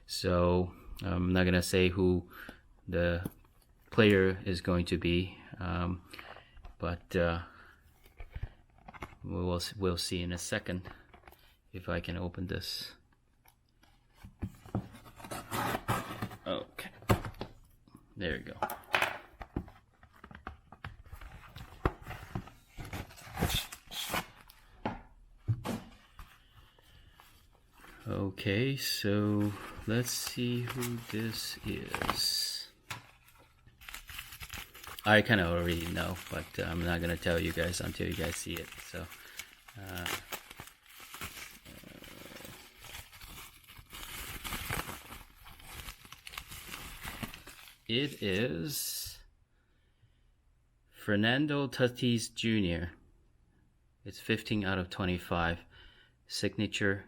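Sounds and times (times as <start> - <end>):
paper and card packaging rustling: 14.0 - 17.4, 19.3 - 24.7, 29.1 - 48.5.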